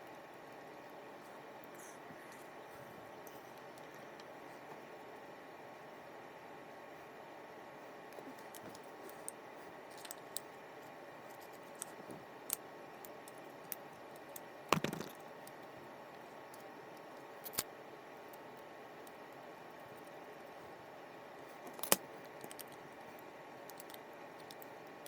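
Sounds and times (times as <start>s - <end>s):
parts clattering: 13.3s - 15.3s.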